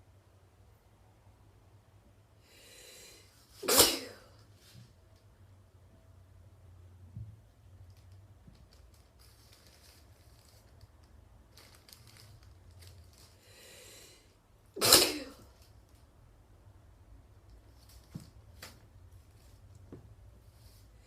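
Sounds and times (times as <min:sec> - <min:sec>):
person inhaling: 0:02.4 - 0:03.5, 0:13.4 - 0:14.4
loud sneeze: 0:03.6 - 0:04.3, 0:14.8 - 0:15.5.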